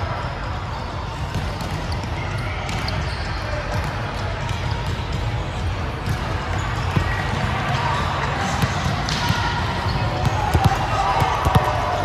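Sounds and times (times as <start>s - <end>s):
players' voices: 0.0s - 12.0s.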